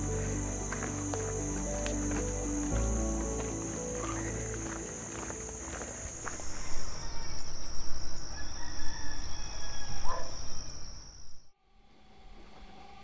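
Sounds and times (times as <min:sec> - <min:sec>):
night insects trilling: 0:00.0 - 0:13.0
rooster crowing: 0:08.2 - 0:10.4.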